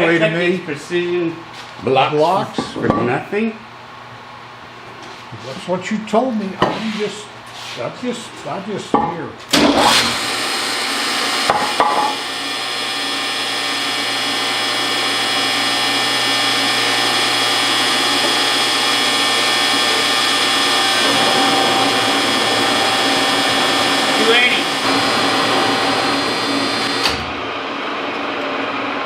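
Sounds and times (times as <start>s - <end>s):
metal lathe running: 9.6s - 28.3s.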